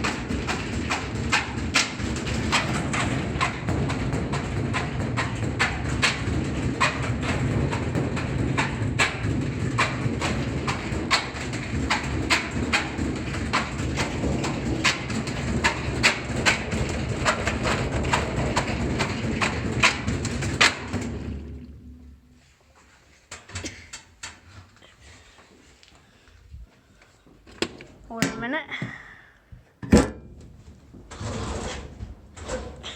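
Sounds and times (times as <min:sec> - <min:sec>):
unbalanced load knocking: 0:00.0 - 0:22.2
washing machine spin rumble: 0:00.0 - 0:22.4.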